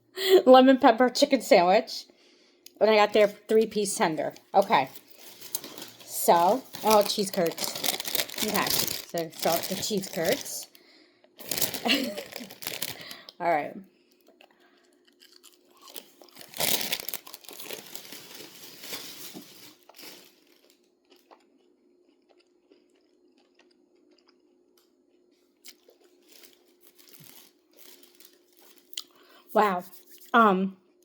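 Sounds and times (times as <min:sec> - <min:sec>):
faint steady hum: 0:00.0 - 0:31.0
crunchy chewing: 0:04.3 - 0:10.8, 0:11.4 - 0:13.4, 0:14.1 - 0:24.9, 0:25.6 - 0:29.3
crunchy bite: 0:15.1 - 0:18.0.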